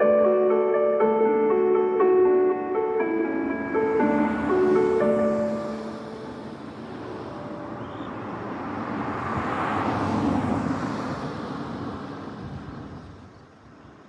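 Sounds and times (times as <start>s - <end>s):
vehicle passing by: 3.4s - 13.2s.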